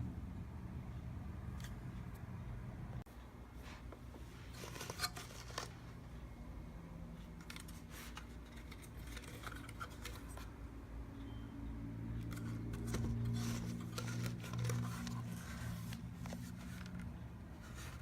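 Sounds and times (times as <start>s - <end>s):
small parts clicking and scraping: 7.4s - 10.6s.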